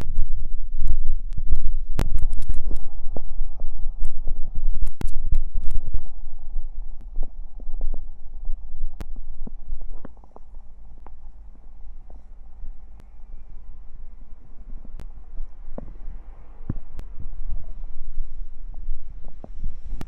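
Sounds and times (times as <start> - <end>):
stomach gurgling: 0.0 - 11.4.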